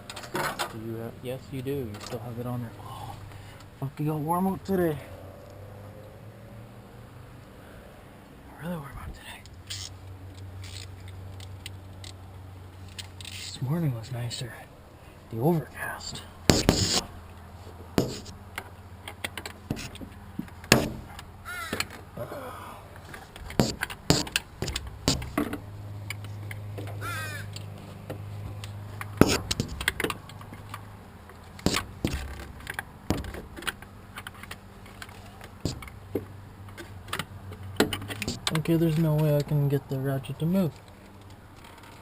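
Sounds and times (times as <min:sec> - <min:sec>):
wrench working a bolt: 0:09.7 - 0:09.9, 0:23.5 - 0:25.5
bird calling: 0:21.4 - 0:23.0, 0:26.9 - 0:27.6.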